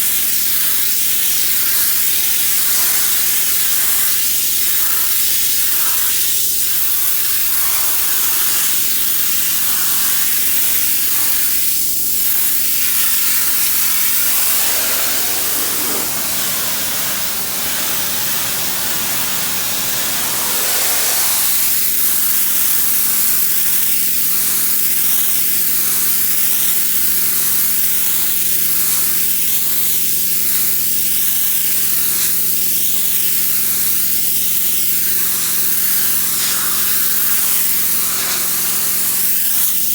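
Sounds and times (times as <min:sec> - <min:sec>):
pressure washer water jet hiss: 0:00.0 - 0:39.9
machine humming: 0:12.4 - 0:21.8.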